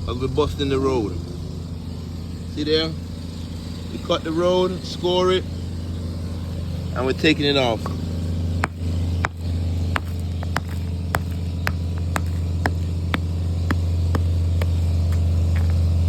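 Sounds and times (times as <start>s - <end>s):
engine running: 0.0s - 16.0s
hammer striking road edge: 7.8s - 15.8s.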